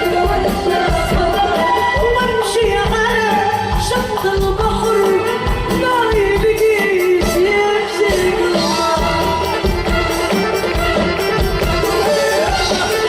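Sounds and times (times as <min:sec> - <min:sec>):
percussion beat: 0:00.0 - 0:13.0
person singing: 0:11.6 - 0:13.0.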